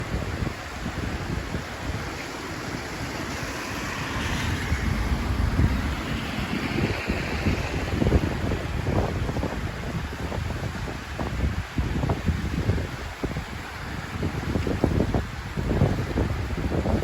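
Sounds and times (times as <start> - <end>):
rushing floodwater: 0.0 - 17.0
wind buffeting microphone: 0.0 - 17.0.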